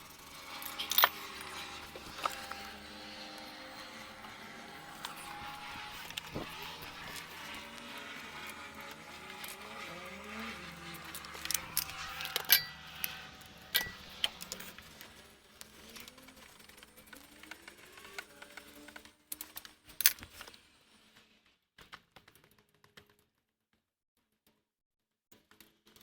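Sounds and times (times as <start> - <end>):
vehicle engine hum: 0.0 - 19.1
metal tools clinking: 0.2 - 3.6, 11.0 - 14.8.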